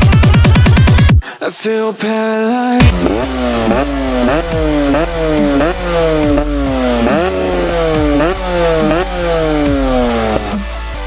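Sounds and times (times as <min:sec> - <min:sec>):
motorcycle engine revving: 0:02.8 - 0:11.0.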